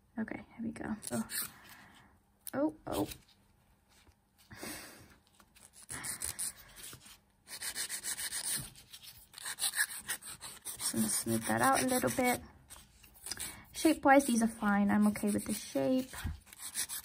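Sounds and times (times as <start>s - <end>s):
nail file rubbing nails: 5.6s - 17.0s.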